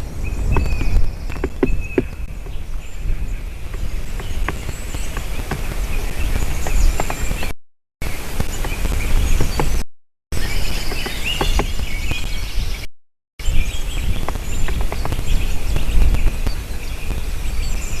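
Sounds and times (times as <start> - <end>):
birds chirping: 0.0 - 9.8, 10.4 - 18.0
low wind rumble: 0.0 - 9.8, 10.4 - 18.0
woodpecker tapping on wood: 0.5 - 2.7, 3.7 - 7.5, 10.7 - 12.2, 14.2 - 15.6.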